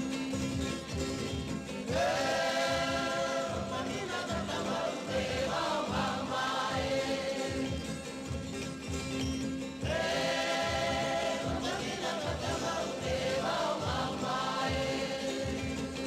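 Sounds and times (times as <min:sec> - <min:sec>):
instrumental accompaniment: 0:00.0 - 0:16.0
voices singing together: 0:01.9 - 0:08.5, 0:09.8 - 0:16.0.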